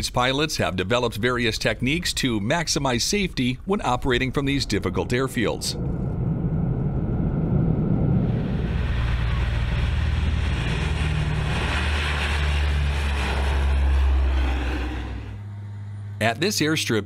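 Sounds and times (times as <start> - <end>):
vehicle engine droning: 4.6 - 16.3.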